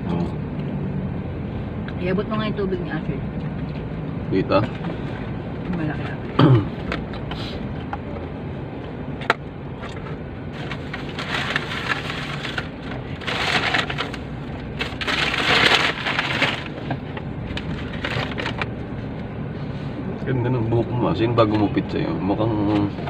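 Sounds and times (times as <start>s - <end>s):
car hum: 0.0s - 23.0s
food packaging crinkling: 10.6s - 16.8s.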